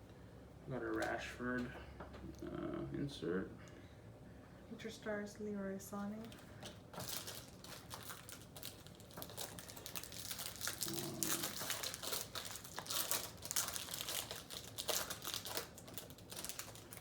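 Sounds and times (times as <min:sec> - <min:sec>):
pack wrapper crinkling: 0:06.3 - 0:17.0.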